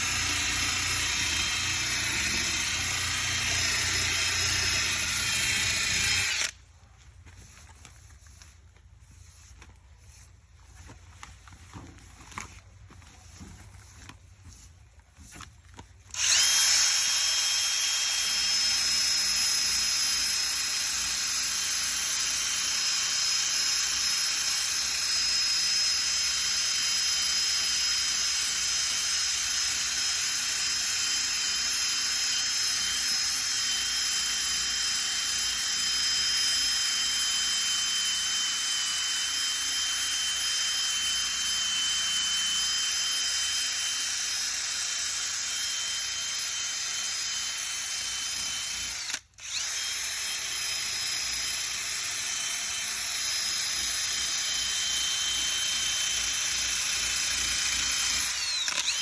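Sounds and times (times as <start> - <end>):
electric drill sanding metal: 0.0 - 6.6, 16.1 - 59.0.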